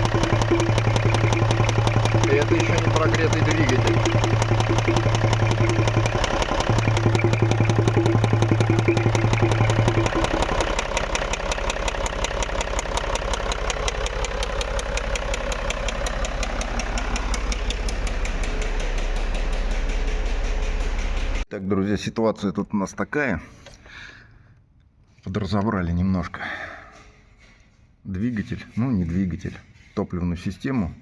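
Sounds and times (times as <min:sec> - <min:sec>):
diesel engine idling with knock: 0:00.0 - 0:21.5
loud low hum: 0:00.0 - 0:21.5.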